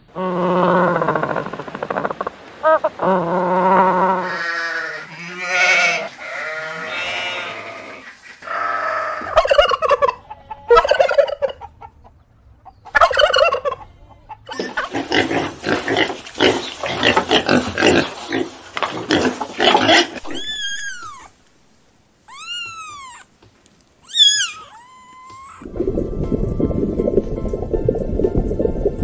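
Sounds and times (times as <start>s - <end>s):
poultry calling loudly: 4.2s - 11.9s, 19.2s - 21.3s, 22.3s - 23.3s, 24.0s - 25.7s.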